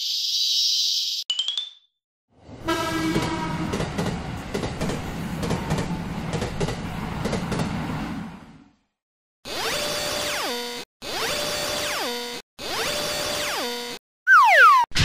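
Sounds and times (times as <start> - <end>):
train rumbling past: 2.4 - 8.8
wheels clacking over rail joints: 3.1 - 8.2.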